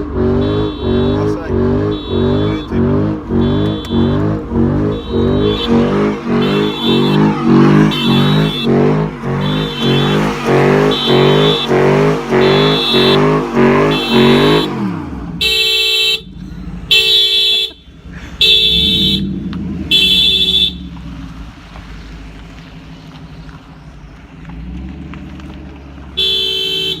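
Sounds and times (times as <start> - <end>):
car alarm warbling siren: 0.0 - 14.9
car horn blasts: 0.0 - 21.0, 26.2 - 27.0
engine idling: 0.0 - 26.9.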